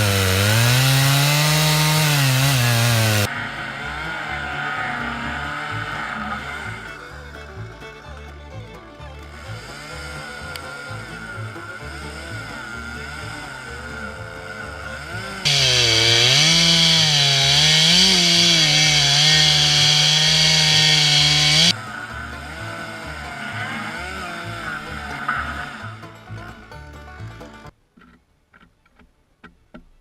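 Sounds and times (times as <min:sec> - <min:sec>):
chainsaw cutting into wood: 0:00.0 - 0:03.3, 0:11.7 - 0:25.9.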